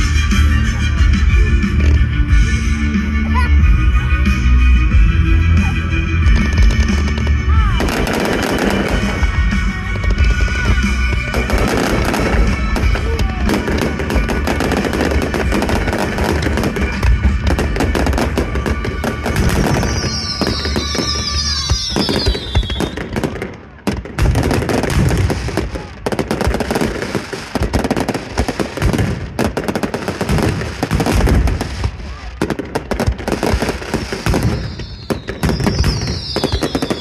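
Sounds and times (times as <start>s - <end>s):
fireworks bangs and crackles: 0.0s - 37.0s
deep firework booms: 6.3s - 37.0s
high wavering whistles: 19.6s - 23.0s, 34.5s - 37.0s.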